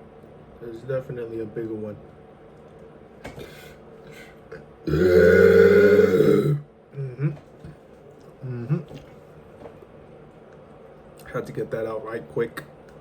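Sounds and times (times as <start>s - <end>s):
low throat sounds: 4.9s - 7.4s
man burping: 4.9s - 7.4s.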